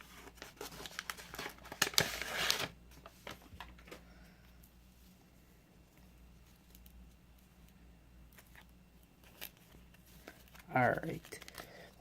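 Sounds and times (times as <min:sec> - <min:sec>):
plastic wrapping crinkling: 0:00.2 - 0:03.7, 0:09.2 - 0:12.0.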